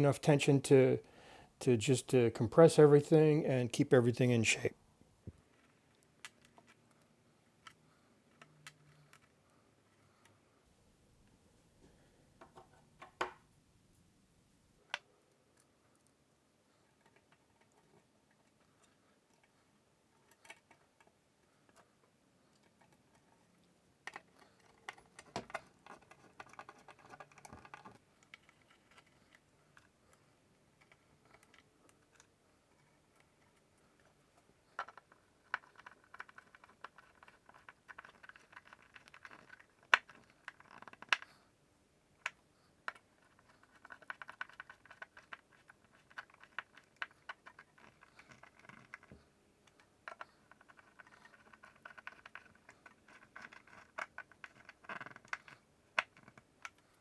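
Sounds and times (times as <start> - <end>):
screwdriver clicking and scraping: 24.1 - 29.9, 42.9 - 56.9.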